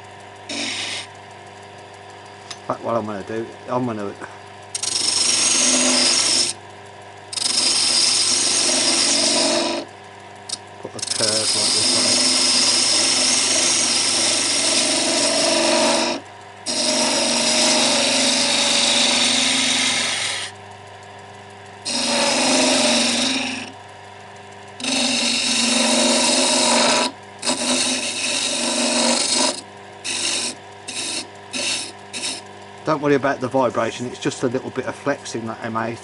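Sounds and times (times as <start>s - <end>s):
lathe humming: 0.0s - 36.0s
tool cutting wood on lathe: 0.4s - 1.7s, 4.7s - 6.6s, 7.2s - 20.6s, 21.8s - 23.8s, 24.7s - 34.2s.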